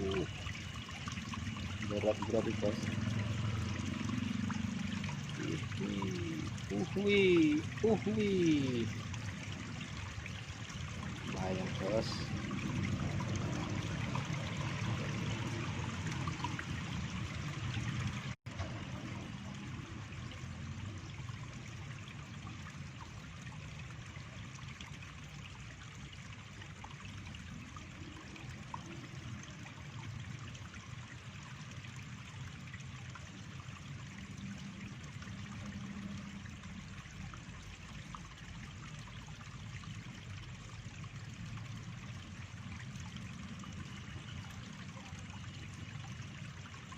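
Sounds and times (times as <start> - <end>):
stream water trickling: 0.0 - 46.9.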